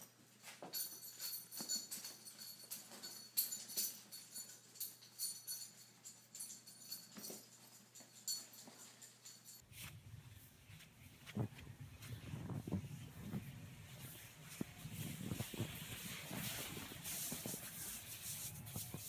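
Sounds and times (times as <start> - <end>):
small bells jingling: 0.0 - 9.6.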